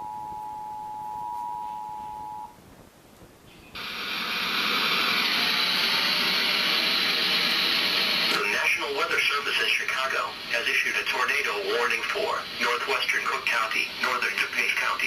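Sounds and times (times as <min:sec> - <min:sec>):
radio static hiss: 0:03.8 - 0:15.0.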